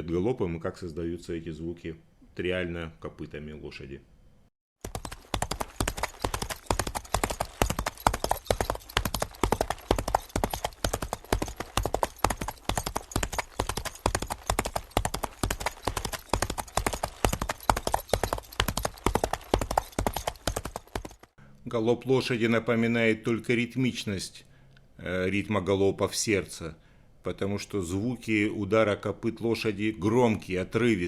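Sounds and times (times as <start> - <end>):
horse galloping hoofbeats: 4.8 - 21.4.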